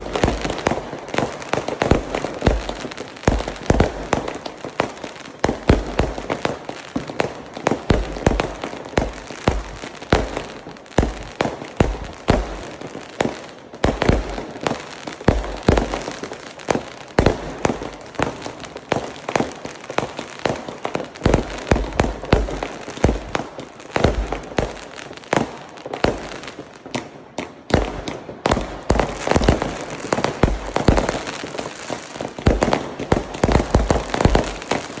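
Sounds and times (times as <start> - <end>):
fireworks booming: 0.0 - 16.3, 27.7 - 35.0
fireworks crackle: 0.0 - 35.0.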